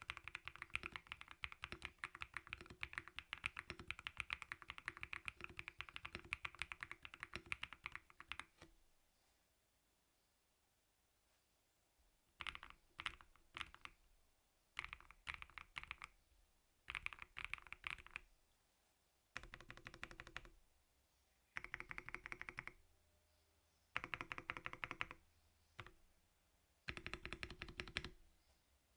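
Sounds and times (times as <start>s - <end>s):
mechanical keyboard typing: 0.0s - 8.7s, 12.4s - 14.0s, 14.8s - 16.2s, 16.9s - 18.3s, 19.4s - 20.6s, 21.6s - 22.8s, 24.0s - 25.2s, 25.8s - 26.0s, 26.9s - 28.2s.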